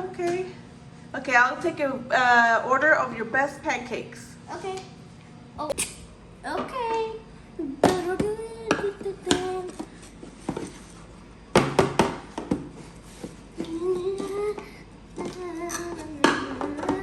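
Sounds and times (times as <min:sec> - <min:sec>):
person humming: 0:13.7 - 0:17.0.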